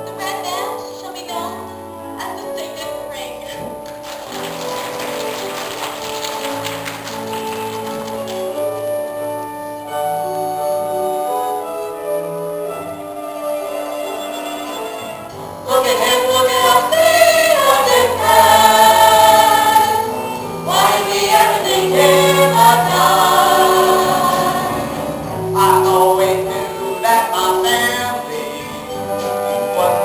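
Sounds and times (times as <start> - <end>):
instrumental accompaniment: 0.0 - 30.0
cast singing in chorus: 15.7 - 30.0.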